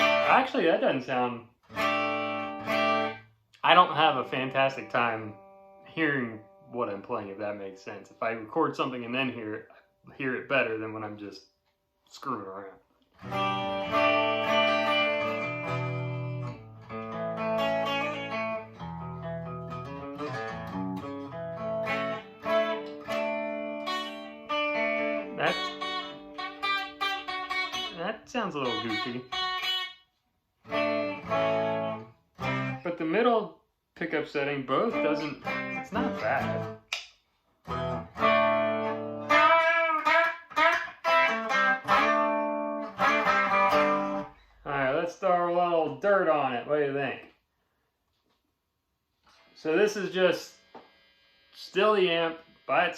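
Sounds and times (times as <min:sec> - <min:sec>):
clean electric guitar strummed chords: 0:00.0 - 0:00.4, 0:01.7 - 0:03.2, 0:13.2 - 0:29.9, 0:30.7 - 0:32.8, 0:34.7 - 0:36.8, 0:37.7 - 0:44.4.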